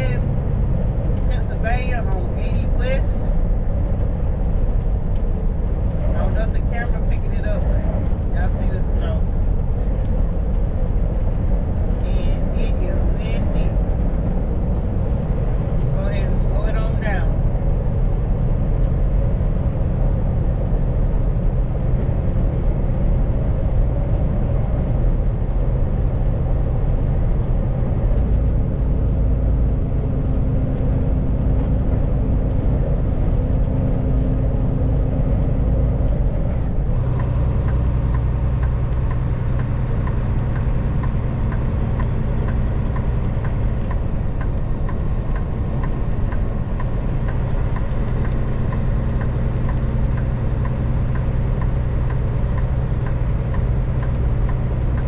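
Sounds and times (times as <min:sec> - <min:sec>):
road noise: 0:00.0 - 0:55.0
truck diesel engine drone: 0:00.0 - 0:55.0
light regular ticking: 0:29.9 - 0:55.0.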